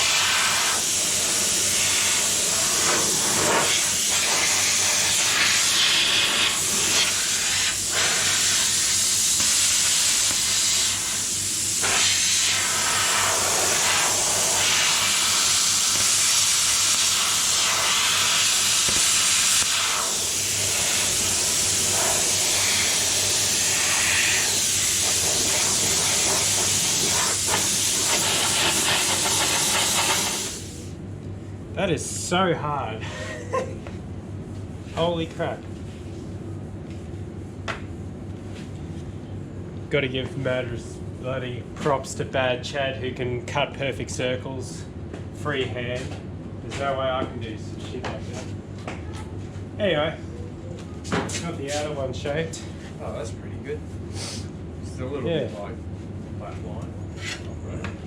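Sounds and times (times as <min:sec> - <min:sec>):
plasma cutter hissing: 0:00.0 - 0:30.9.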